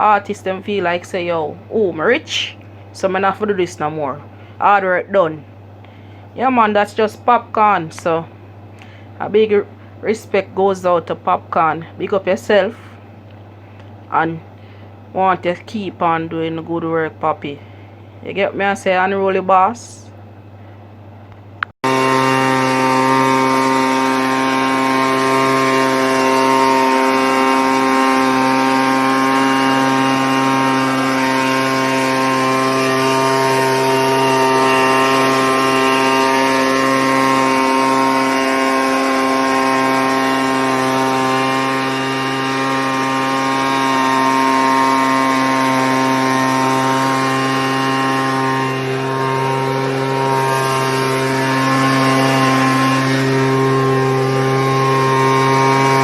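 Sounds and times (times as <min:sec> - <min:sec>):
chainsaw running at high speed: 0:00.0 - 0:04.6, 0:21.7 - 0:56.0.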